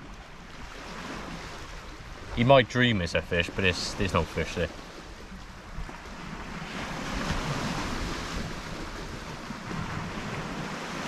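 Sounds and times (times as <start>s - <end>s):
waves washing on shore: 0.0s - 11.0s
wind on microphone: 5.1s - 11.0s.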